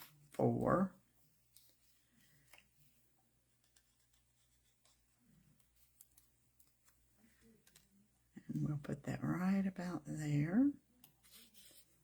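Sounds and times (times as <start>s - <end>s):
paper rustling and ticking: 1.4s - 8.0s.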